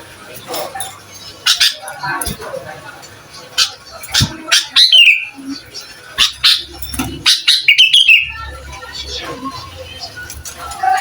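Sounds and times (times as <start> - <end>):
bulbul singing: 3.6 - 8.6.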